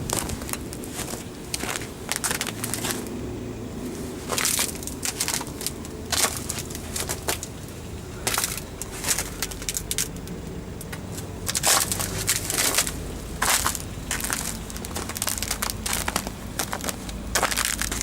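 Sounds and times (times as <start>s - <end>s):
crunching and crackling: 0.0s - 18.0s
low steady hum: 0.0s - 18.0s.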